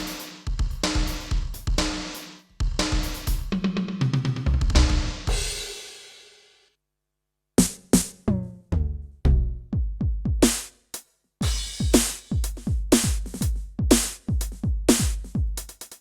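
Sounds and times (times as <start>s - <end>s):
electronic drum kit playing: 0.0s - 5.7s, 8.8s - 10.7s, 11.4s - 16.0s.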